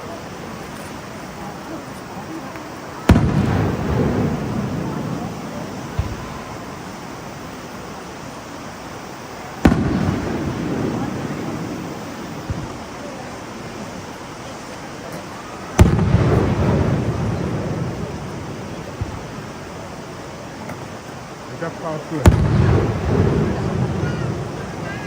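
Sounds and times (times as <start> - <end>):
faint firework pops: 1.9 - 6.8, 9.6 - 12.9, 15.1 - 19.8, 20.6 - 21.0, 22.2 - 25.0
firework bang with rumbling echo: 3.0 - 7.3, 9.6 - 12.9, 15.7 - 20.9, 22.1 - 25.0.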